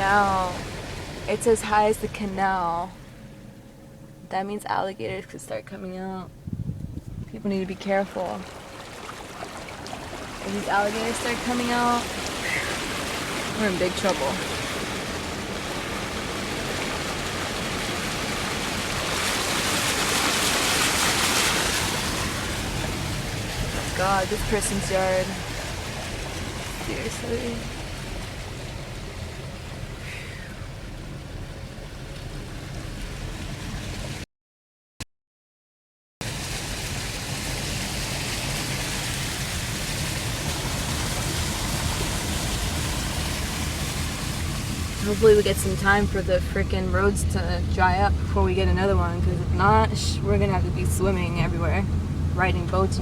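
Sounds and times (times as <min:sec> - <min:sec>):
car driving through flooded street: 0:00.0 - 0:03.5, 0:07.4 - 0:34.2, 0:36.2 - 0:53.0
rain and water rushing: 0:00.0 - 0:04.4, 0:05.0 - 0:34.3, 0:36.2 - 0:53.0.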